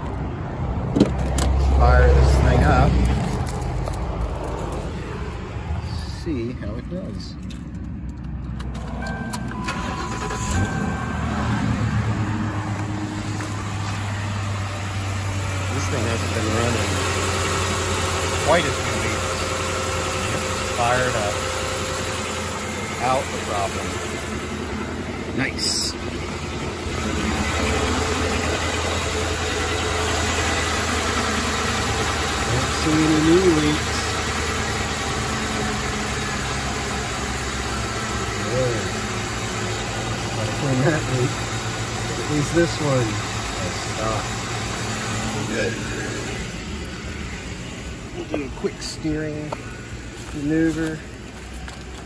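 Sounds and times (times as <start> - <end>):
car engine cranking and idling: 0.0 - 52.0
short beeps: 9.0 - 12.2.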